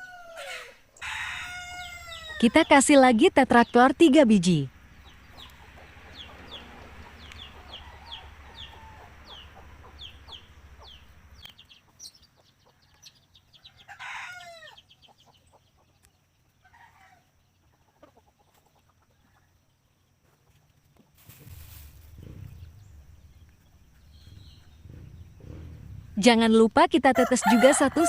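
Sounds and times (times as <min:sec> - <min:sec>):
fowl squawk: 0:00.0 - 0:02.4
fowl peeping: 0:05.0 - 0:19.5.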